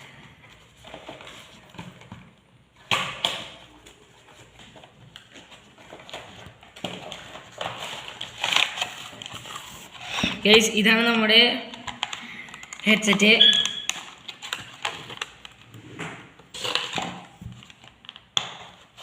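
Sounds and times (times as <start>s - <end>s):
packaging scraping and ticking: 11.8s - 15.8s, 16.5s - 17.0s.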